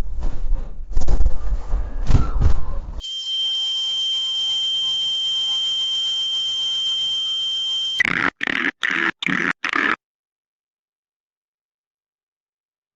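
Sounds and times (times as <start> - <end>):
high-pitched electronic beep: 3.0 - 10.0
short choppy bursts: 8.0 - 10.0.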